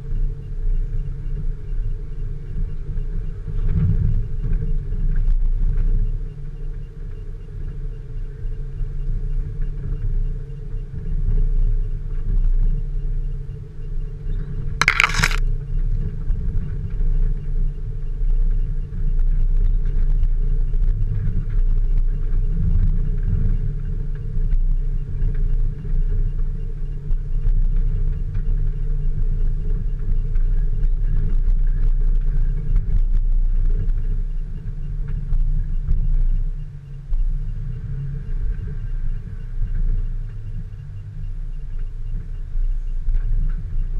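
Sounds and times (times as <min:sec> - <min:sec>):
off-road vehicle rumbling: 0:16.1 - 0:43.9.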